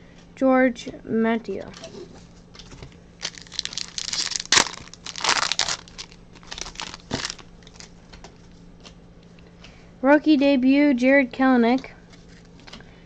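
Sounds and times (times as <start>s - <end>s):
foil wrapper crinkling and tearing: 3.2s - 7.9s.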